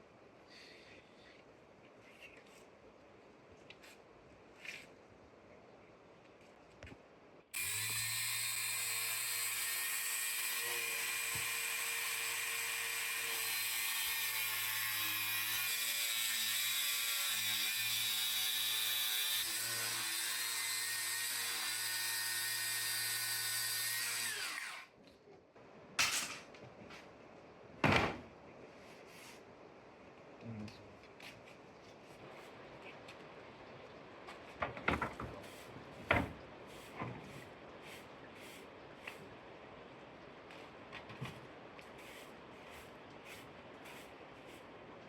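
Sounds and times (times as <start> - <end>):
electric power tool running: 7.6 - 14.5, 22.4 - 24.9.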